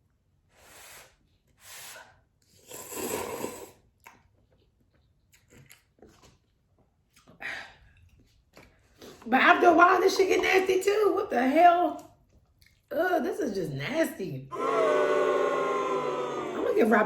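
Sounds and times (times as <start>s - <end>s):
noisy noodle slurps: 2.4s - 4.2s
wet mouth clicks: 2.6s - 6.4s
soft chewing: 3.8s - 9.3s, 11.9s - 12.9s.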